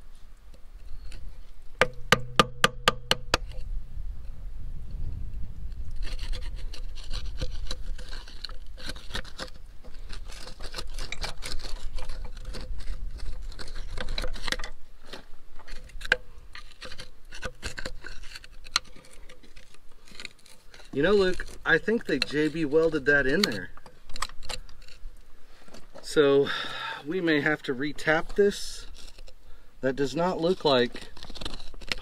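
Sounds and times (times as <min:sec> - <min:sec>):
hand tool scraping metal: 0:05.9 - 0:25.1.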